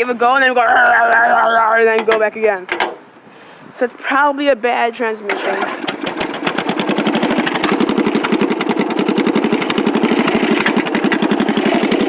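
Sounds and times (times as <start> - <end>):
lawn mower engine putter: 2.0 - 3.1, 5.3 - 12.0.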